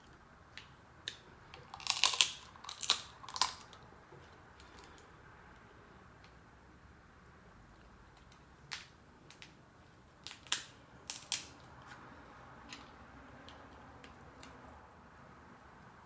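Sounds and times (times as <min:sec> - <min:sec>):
crab shell cracking: 0:01.0 - 0:03.8.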